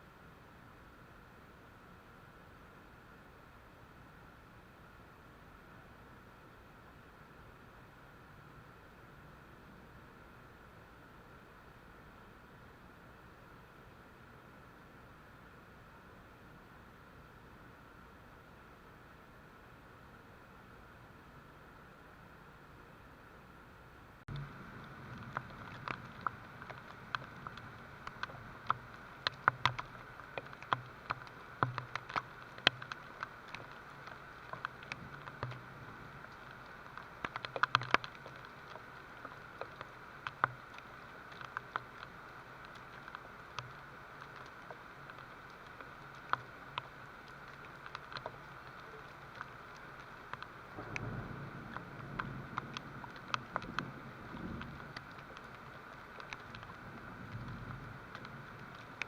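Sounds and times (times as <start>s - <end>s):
faint hiss: 0.0s - 59.0s
rain patter on hard surface: 24.2s - 59.0s.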